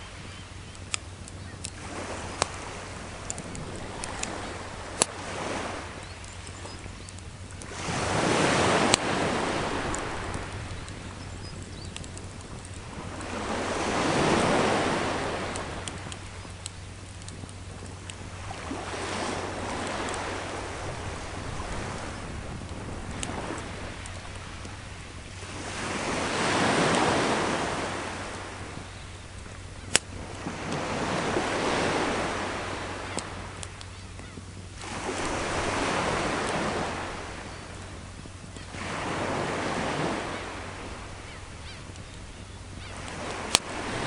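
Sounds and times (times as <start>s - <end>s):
sea waves washing ashore: 0.0s - 44.0s
wood fire crackling: 0.7s - 8.0s, 8.6s - 26.1s.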